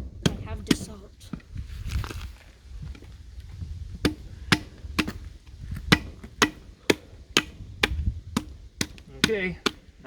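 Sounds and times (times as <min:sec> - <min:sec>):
blade chopping through ribs: 0:04.0 - 0:05.2, 0:05.9 - 0:09.9.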